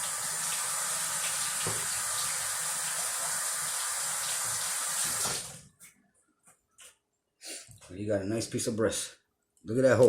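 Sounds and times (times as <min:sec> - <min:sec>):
tap water running into sink: 0:00.0 - 0:05.6.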